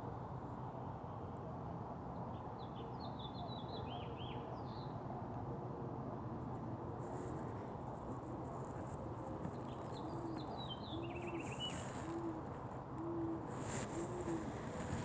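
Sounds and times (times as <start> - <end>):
songbird twittering song: 9.5 - 12.5
bird hooting coos: 9.7 - 15.0.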